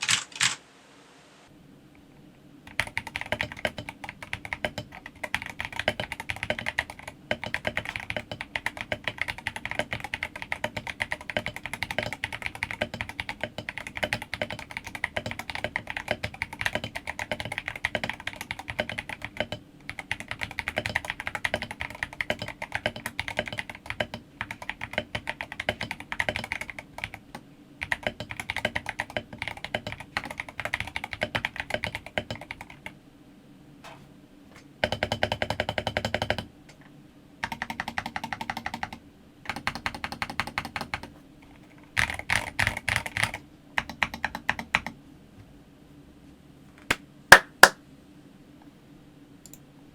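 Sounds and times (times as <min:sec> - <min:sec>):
fast typing on mechanical keyboard: 0:00.0 - 0:00.6, 0:02.7 - 0:33.0, 0:34.8 - 0:36.5, 0:37.4 - 0:41.1, 0:41.9 - 0:45.0.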